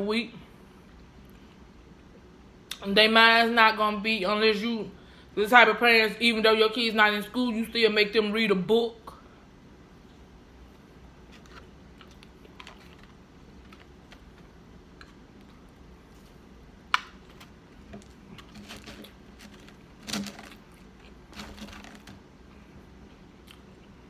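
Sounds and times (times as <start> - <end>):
quiet chewing: 10.0 - 16.5, 17.2 - 24.0
crunchy chewing: 11.2 - 24.0
small clicks and crackles: 11.3 - 16.4, 17.0 - 22.2.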